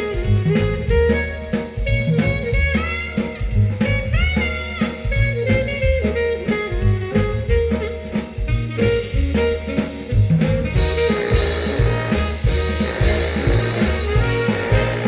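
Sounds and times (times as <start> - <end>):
bass line: 0.0 - 15.0
drum kit: 0.0 - 15.0
sliding lead line: 0.0 - 15.0.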